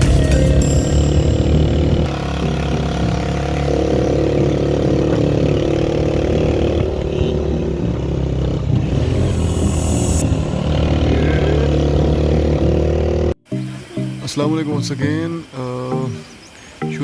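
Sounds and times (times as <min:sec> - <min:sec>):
motorcycle engine running: 0:00.0 - 0:13.4.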